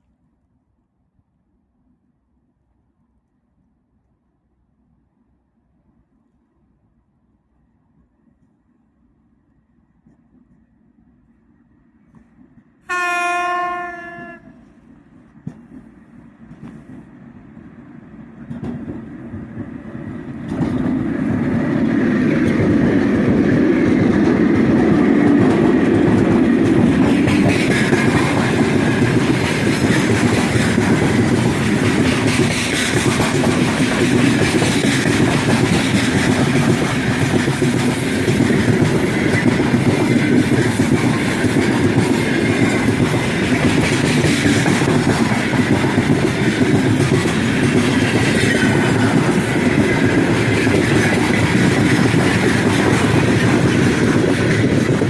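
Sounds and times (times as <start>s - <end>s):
freight train wheels clattering: 18.2s - 55.0s.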